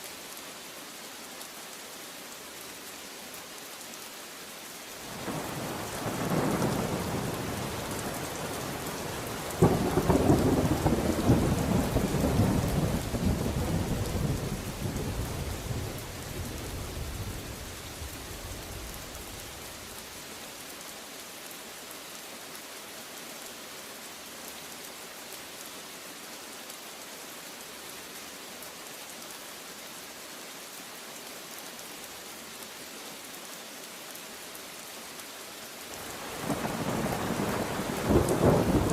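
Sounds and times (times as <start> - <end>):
heavy rain: 0.0 - 38.9
thunder rumbling: 36.2 - 38.9.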